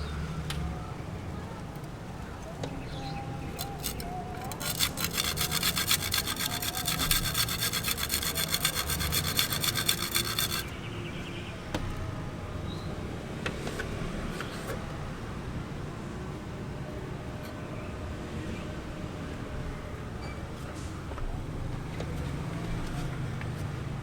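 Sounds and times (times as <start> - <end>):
saw cutting: 3.6 - 10.7.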